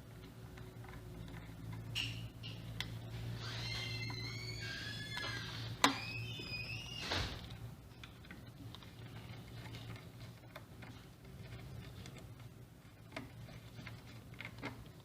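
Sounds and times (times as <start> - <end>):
screws squeaking: 3.4 - 7.3.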